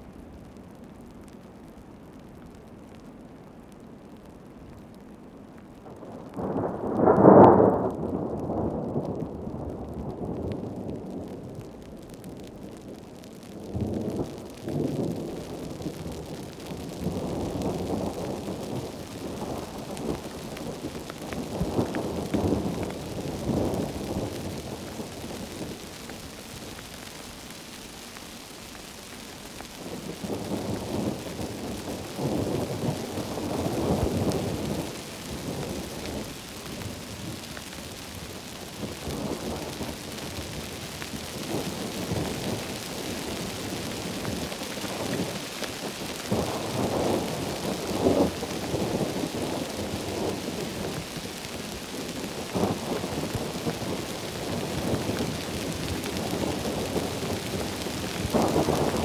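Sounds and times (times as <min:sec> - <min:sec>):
heavy rain: 0:00.0 - 0:59.0
rolling thunder: 0:06.2 - 0:11.2.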